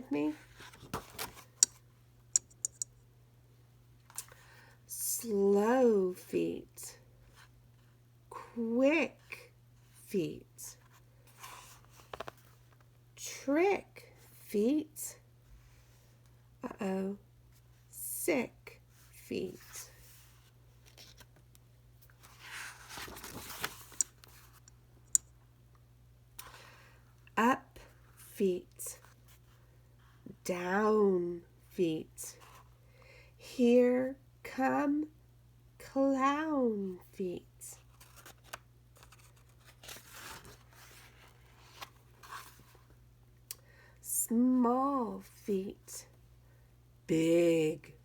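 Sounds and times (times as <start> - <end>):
book page rustling: 11.3 - 12.8, 20.8 - 24.6, 37.8 - 42.9.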